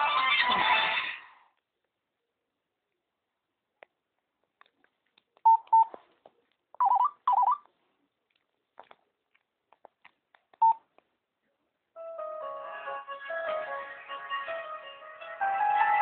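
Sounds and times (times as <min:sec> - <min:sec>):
phone keypad beeps: 0:05.5 - 0:05.9, 0:06.8 - 0:07.6, 0:10.6 - 0:10.8.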